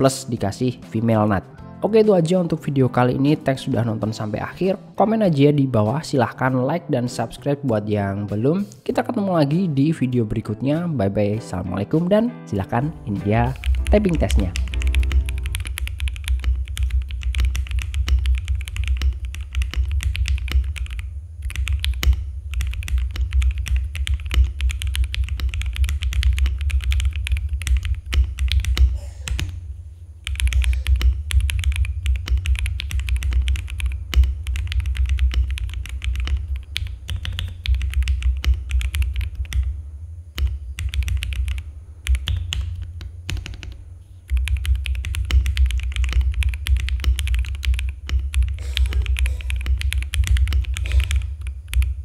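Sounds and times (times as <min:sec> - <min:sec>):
mechanical keyboard typing: 0:13.3 - 0:29.6, 0:30.2 - 0:39.7, 0:40.4 - 0:52.0.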